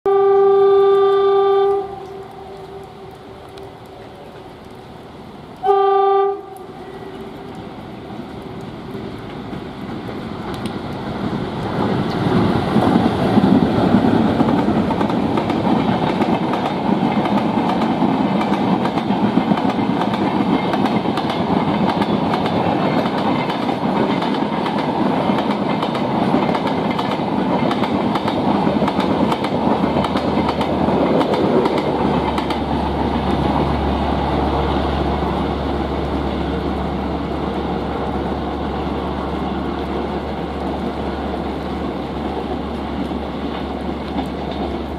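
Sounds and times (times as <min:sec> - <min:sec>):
locomotive horn blast: 0:00.1 - 0:02.3, 0:05.6 - 0:07.0
train running past: 0:00.1 - 0:44.9.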